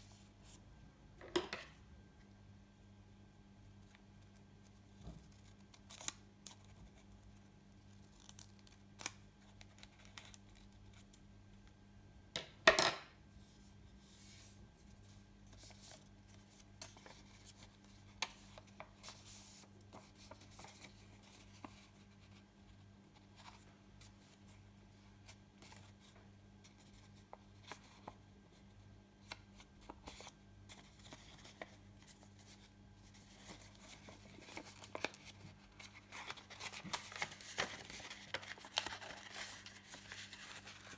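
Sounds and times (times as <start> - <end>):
low steady hum: 0.0 - 5.6
paper rustling and folding: 3.9 - 11.2, 13.5 - 40.9.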